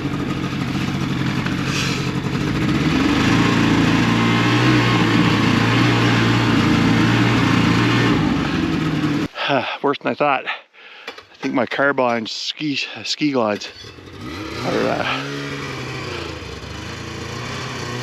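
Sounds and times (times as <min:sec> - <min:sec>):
snowmobile engine revving: 0:00.0 - 0:09.3, 0:13.9 - 0:18.0.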